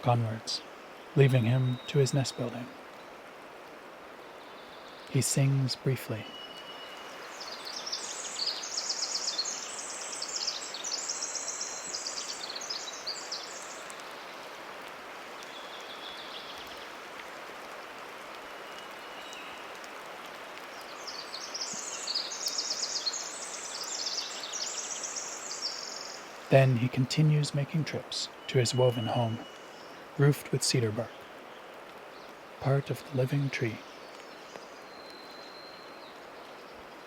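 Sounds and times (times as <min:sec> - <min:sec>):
dripping rainwater hiss: 0:00.0 - 0:37.0
wren singing trills: 0:04.5 - 0:14.0, 0:20.9 - 0:31.4.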